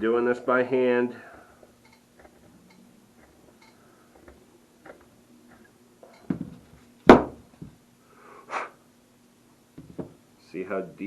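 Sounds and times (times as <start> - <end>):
dull thump: 6.3 - 7.8
sharp knocks: 6.3 - 7.8.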